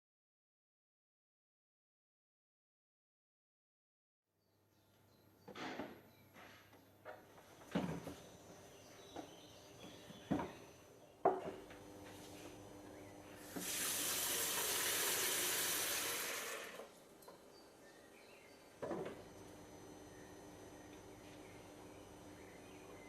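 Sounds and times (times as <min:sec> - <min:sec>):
water running in hissing stream: 0:13.4 - 0:16.9.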